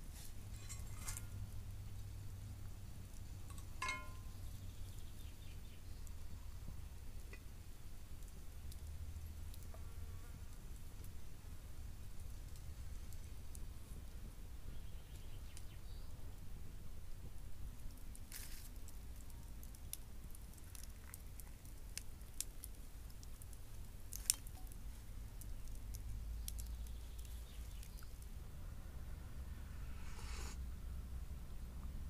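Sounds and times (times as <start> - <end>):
low steady rumble: 18.9 - 32.0.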